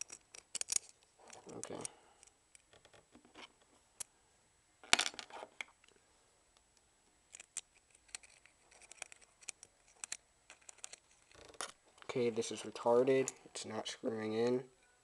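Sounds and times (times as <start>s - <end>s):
small metallic clicks and scrapes: 0.0s - 3.5s, 7.3s - 12.2s.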